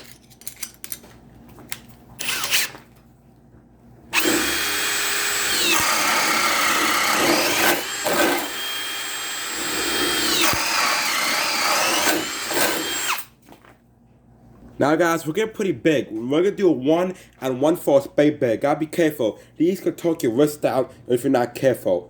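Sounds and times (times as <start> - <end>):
hammer drill motor whine: 2.2 - 2.7, 4.1 - 13.3.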